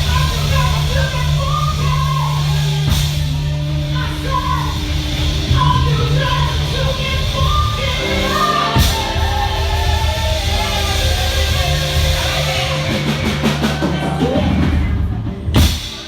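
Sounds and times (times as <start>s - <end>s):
band with steady bass: 0.0s - 16.0s
sharp drum or cymbal hits: 2.7s - 16.0s
person singing: 4.0s - 15.9s.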